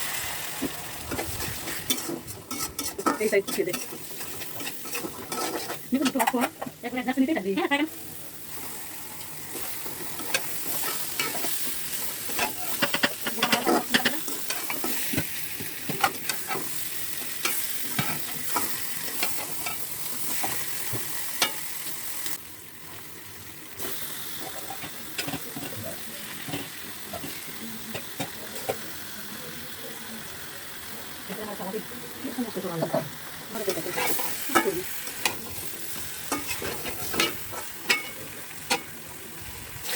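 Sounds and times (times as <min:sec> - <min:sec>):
food sizzling in hot oil: 0:00.0 - 0:39.9
spatula scraping a pan: 0:01.1 - 0:06.8, 0:08.5 - 0:21.7, 0:33.6 - 0:39.0.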